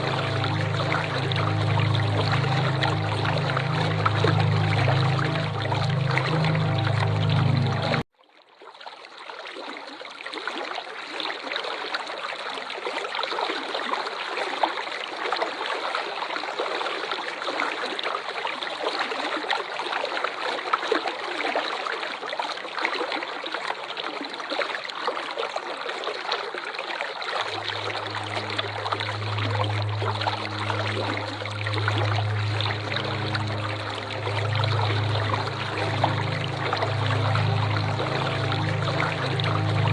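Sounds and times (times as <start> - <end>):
low steady hum: 0.0 - 8.0, 27.5 - 39.9
waterfall rushing and splashing: 0.0 - 8.0, 27.5 - 39.9.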